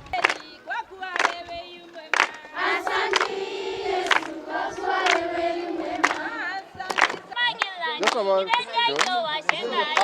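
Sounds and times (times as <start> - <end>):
choir singing long notes: 2.5 - 7.3.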